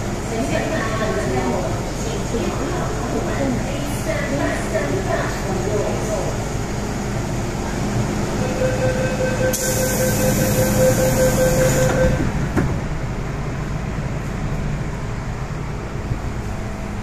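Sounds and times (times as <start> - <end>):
train rumble with whine: 0.0 - 17.0.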